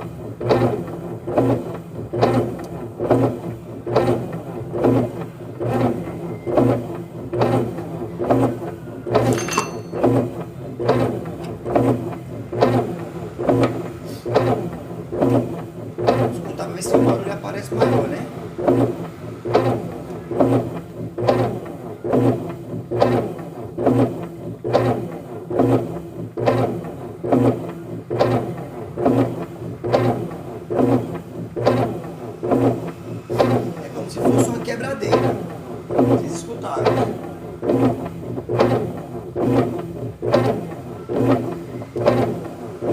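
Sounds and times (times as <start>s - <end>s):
washing machine agitating: 0.0s - 42.9s
clattering knock: 9.2s - 10.0s.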